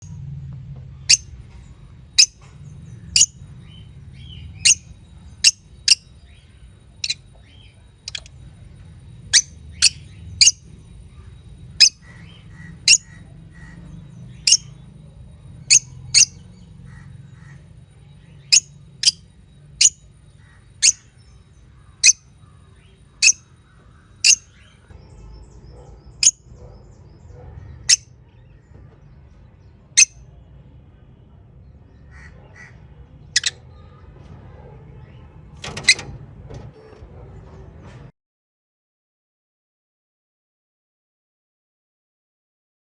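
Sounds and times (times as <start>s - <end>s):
lovebirds chirping: 2.2s - 8.3s, 9.2s - 15.0s, 15.6s - 17.4s, 18.3s - 19.2s, 19.8s - 21.4s, 22.0s - 24.8s, 33.4s - 33.6s.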